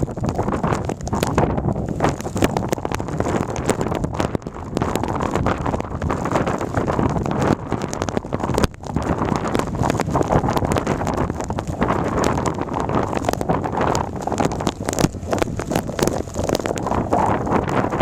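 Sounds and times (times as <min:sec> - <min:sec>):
clicks and crackles: 0:00.0 - 0:18.0
wind buffeting microphone: 0:00.0 - 0:18.0.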